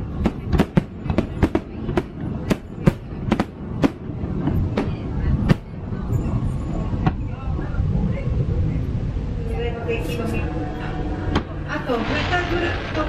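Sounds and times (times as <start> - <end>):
fireworks bangs and cracks: 0.0 - 5.8
low rumble: 0.0 - 13.0.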